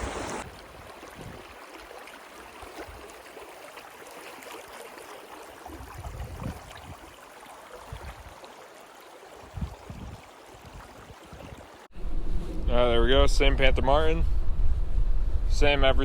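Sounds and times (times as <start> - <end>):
creek water rushing: 0.0 - 11.9.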